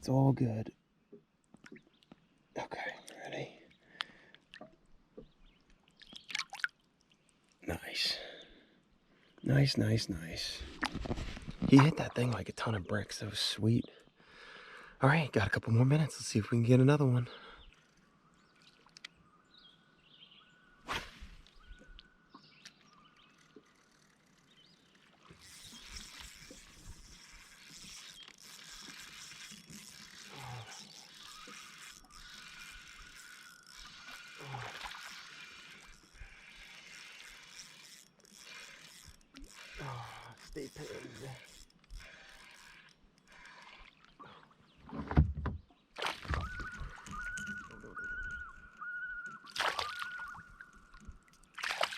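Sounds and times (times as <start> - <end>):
water sloshing around kayak: 10.6 - 12.6, 17.4 - 51.9
bird calls: 17.0 - 51.6
sharp swish: 20.8 - 21.3.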